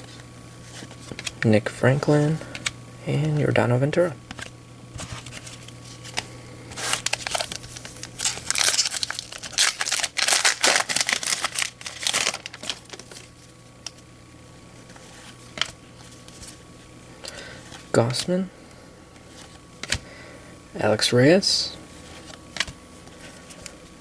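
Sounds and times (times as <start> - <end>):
foil wrapper tearing and crinkling: 5.2 - 14.0.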